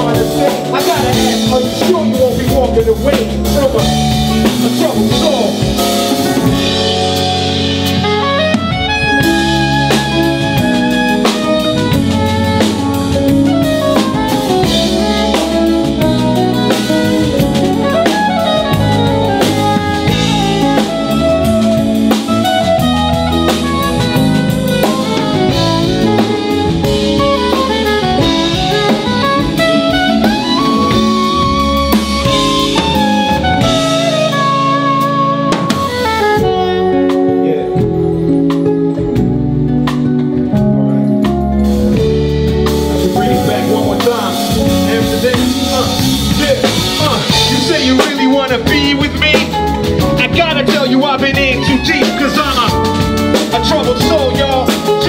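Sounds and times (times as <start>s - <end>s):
bass: 0.0s - 55.0s
drum kit: 0.0s - 55.0s
keyboard: 0.0s - 55.0s
saxophone melody: 0.0s - 55.0s.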